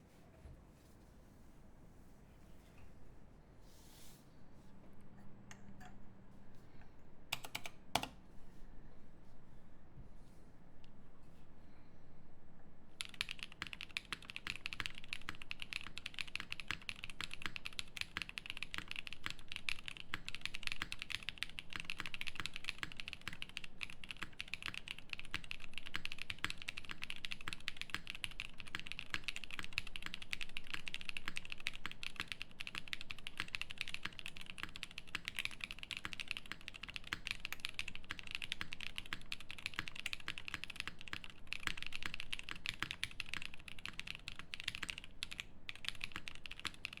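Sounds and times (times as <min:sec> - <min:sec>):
mechanical keyboard typing: 0:07.3 - 0:08.2, 0:13.0 - 0:47.0.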